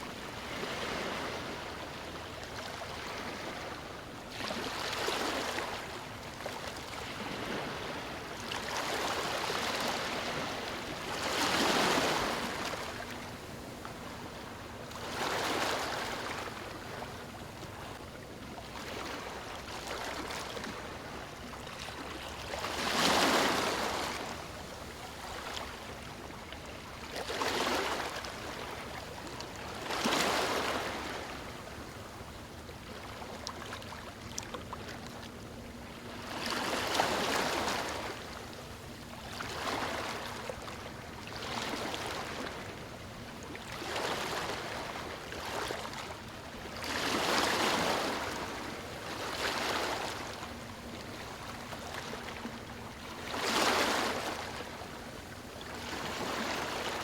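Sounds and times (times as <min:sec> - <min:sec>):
waves breaking on stony shore: 0:11.2 - 0:13.2, 0:22.6 - 0:24.3, 0:46.8 - 0:50.2, 0:53.2 - 0:54.4.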